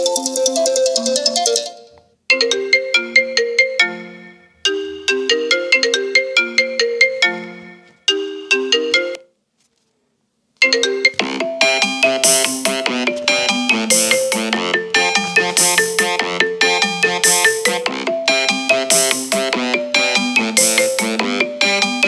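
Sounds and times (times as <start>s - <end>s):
bright busy ringtone: 0.0s - 9.2s, 10.7s - 22.0s
phone ringtone melody: 0.0s - 9.3s, 10.6s - 22.0s.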